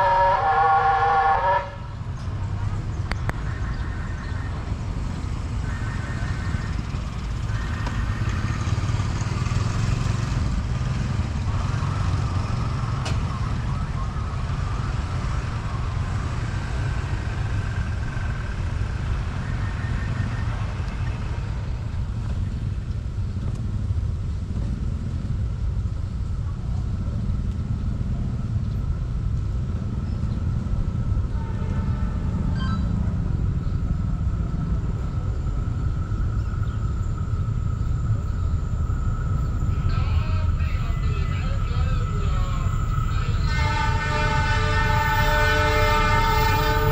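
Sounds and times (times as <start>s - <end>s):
level crossing warning siren: 0.0s - 1.8s, 3.4s - 8.9s, 11.6s - 17.4s, 32.0s - 46.9s
road vehicle engines rumbling: 0.0s - 46.9s.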